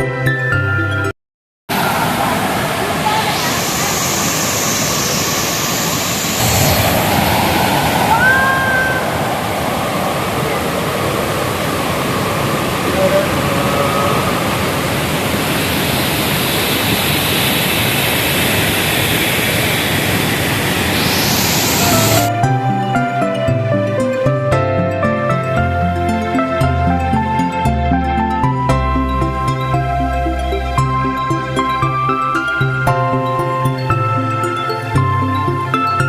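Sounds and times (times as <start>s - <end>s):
music: 0.0s - 1.1s, 21.8s - 36.0s
waterfall roaring: 1.7s - 22.3s
rising whistle-like calls: 3.2s - 9.9s, 21.0s - 22.3s.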